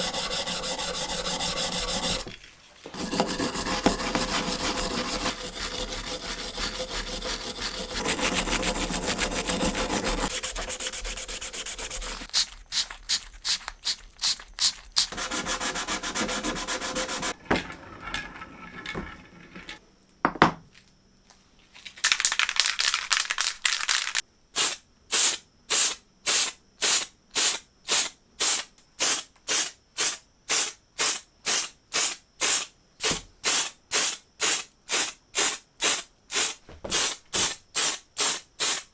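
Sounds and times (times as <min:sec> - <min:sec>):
hand sanding metal: 0:00.0 - 0:02.3, 0:02.9 - 0:17.4.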